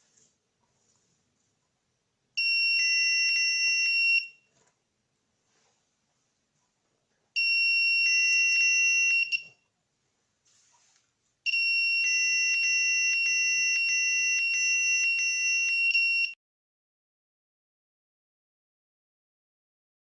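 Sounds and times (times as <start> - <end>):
smoke alarm tone: 2.4 - 4.5, 7.4 - 9.6, 11.5 - 16.4.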